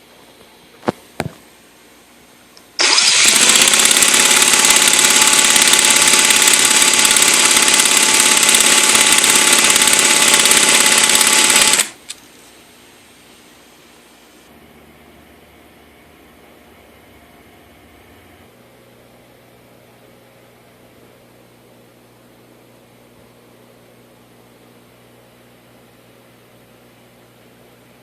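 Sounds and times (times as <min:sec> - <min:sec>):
sharp clicks: 0:02.6 - 0:12.2
electric starter buzzing: 0:02.8 - 0:12.2.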